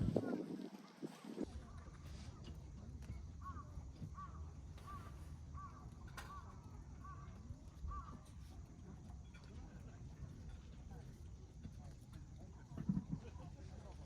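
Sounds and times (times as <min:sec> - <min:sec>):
bird calling: 0:03.4 - 0:07.3.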